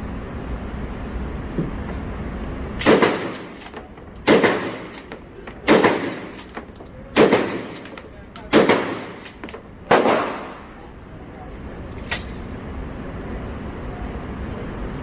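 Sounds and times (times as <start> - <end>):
gunshots with echo: 2.8 - 10.8.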